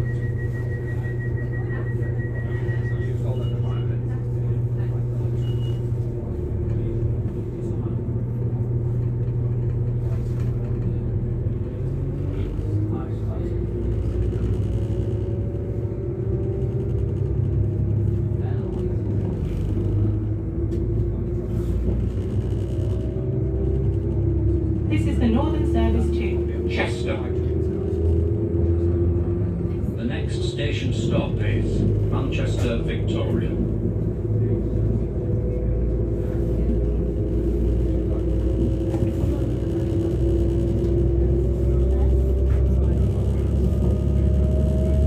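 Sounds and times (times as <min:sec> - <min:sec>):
constant hum: 0:00.0 - 0:45.0
train diesel engine rumble: 0:00.0 - 0:45.0.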